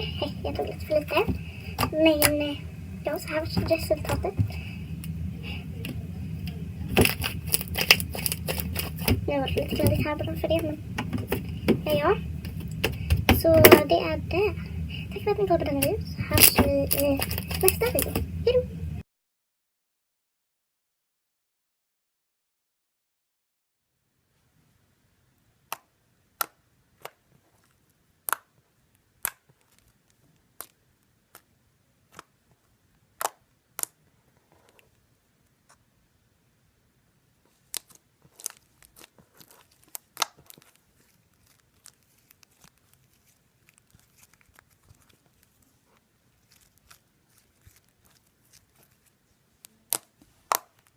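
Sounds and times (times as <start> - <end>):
sharp clicks and snaps: 0.1 - 19.0.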